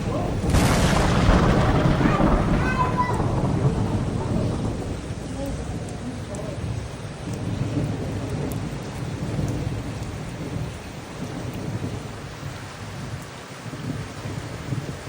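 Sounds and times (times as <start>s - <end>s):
low rumble: 0.0s - 6.8s
steady rain falling: 0.0s - 15.0s.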